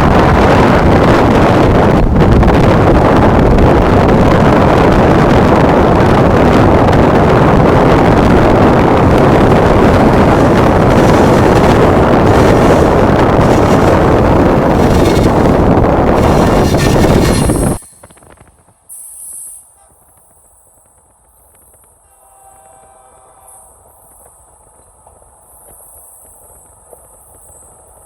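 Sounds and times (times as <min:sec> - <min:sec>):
vehicle rumbling: 0:00.0 - 0:22.0
wind buffeting microphone: 0:00.0 - 0:28.0.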